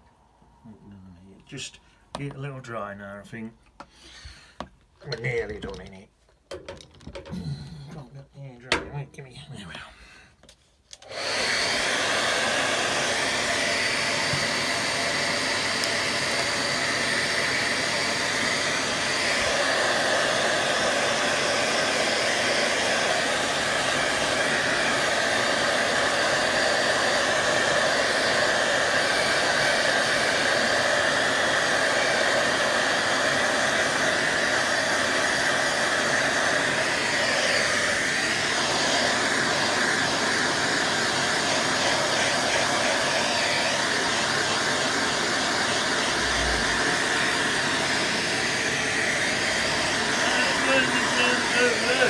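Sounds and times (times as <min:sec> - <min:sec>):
hair dryer blowing: 0:10.9 - 0:52.0.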